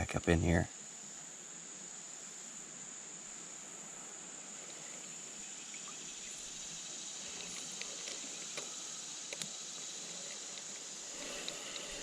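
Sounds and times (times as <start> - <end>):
insects calling: 0.0 - 12.0
faint clicks: 7.3 - 12.0.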